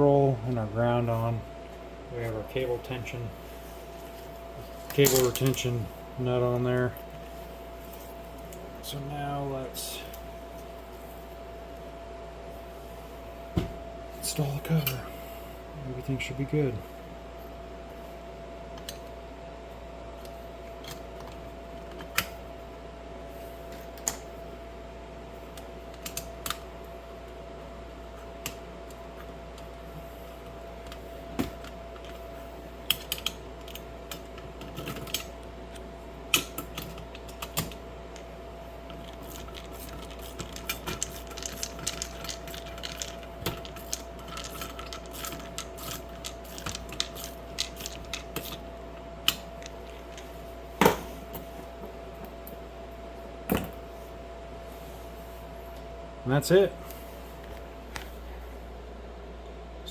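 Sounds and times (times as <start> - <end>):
faint steady hum: 0.0 - 59.9
small metal parts clicking: 39.0 - 48.5.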